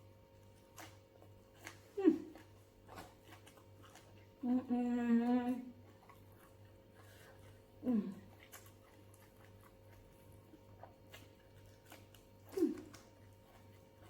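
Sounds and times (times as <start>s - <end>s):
woman humming while eating: 1.9s - 2.5s, 4.4s - 5.8s, 7.8s - 8.3s, 12.5s - 13.1s.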